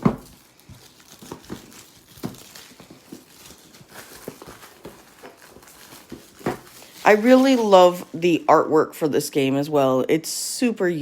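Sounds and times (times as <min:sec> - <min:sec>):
cardboard crinkling: 0:00.0 - 0:08.7.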